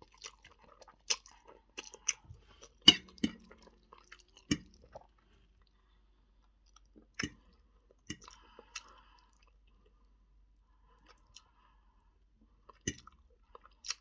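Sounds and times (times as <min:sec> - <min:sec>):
person chewing with wet smacks: 0:00.0 - 0:05.8, 0:06.4 - 0:10.0, 0:10.9 - 0:11.6, 0:12.6 - 0:14.0.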